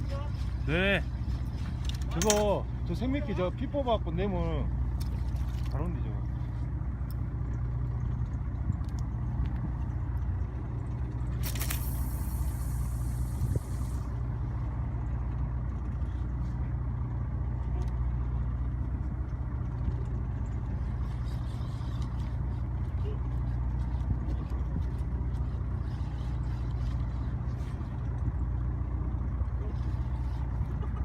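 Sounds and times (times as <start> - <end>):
boat engine humming: 0.0 - 31.0
loud hiss: 11.4 - 14.1.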